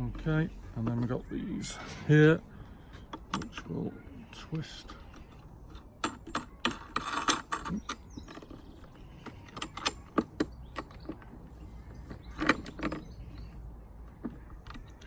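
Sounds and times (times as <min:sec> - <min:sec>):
plastic parts clicking and knocking: 0:02.9 - 0:03.8, 0:05.0 - 0:15.0
scraping rattle: 0:04.9 - 0:15.0.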